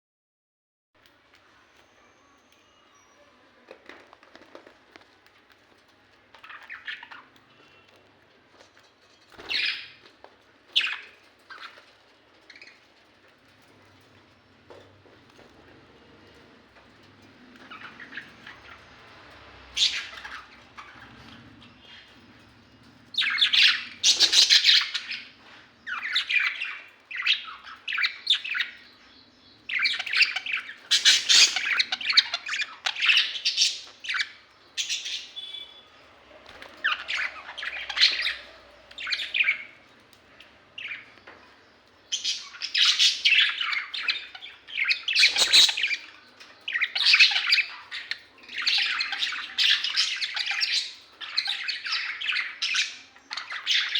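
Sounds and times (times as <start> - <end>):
budgerigars chattering and squawking: 9.3 - 10.1, 10.8 - 11.9, 17.6 - 22.4, 23.1 - 29.0, 29.6 - 39.8, 40.7 - 53.9.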